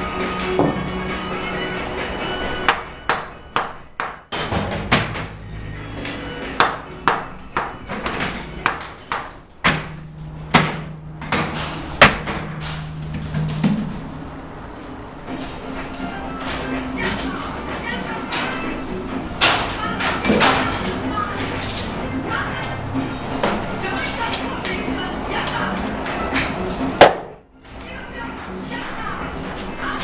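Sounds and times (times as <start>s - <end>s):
low hum: 5.4s - 15.4s.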